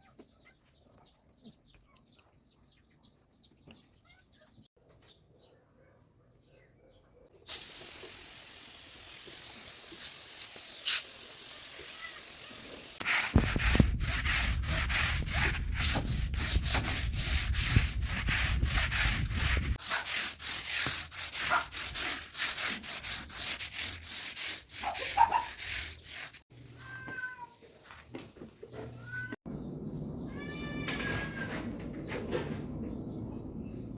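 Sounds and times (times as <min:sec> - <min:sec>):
scrubbing and scraping strokes: 0:07.6 - 0:27.0
cat meowing: 0:26.8 - 0:27.6, 0:29.0 - 0:29.4, 0:30.2 - 0:31.6.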